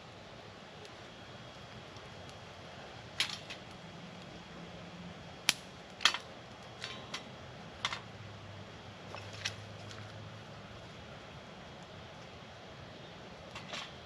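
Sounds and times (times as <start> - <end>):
sharp snaps and clicks: 5.4 - 6.8.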